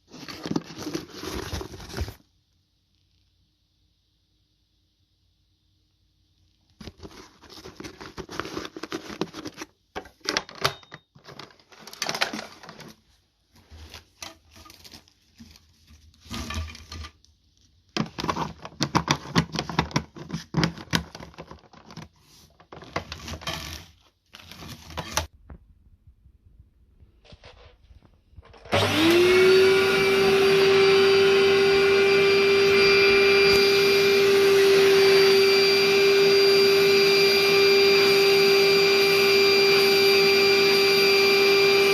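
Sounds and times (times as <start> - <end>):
handling clicks and rustling: 6.8 - 13.1
vacuum cleaner motor whining: 28.6 - 41.9.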